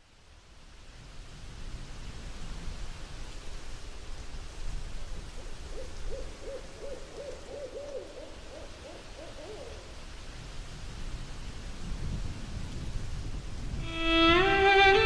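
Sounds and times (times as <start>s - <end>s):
owl hooting: 5.7s - 9.9s.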